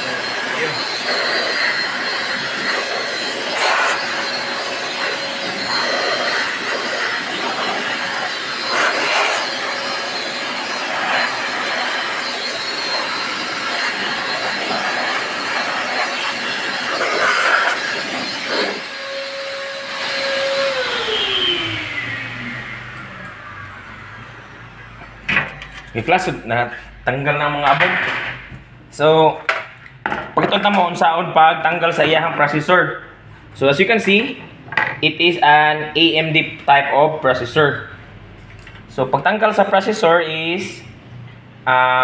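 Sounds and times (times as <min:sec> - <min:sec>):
electric dust blower running: 0:00.0 - 0:25.9.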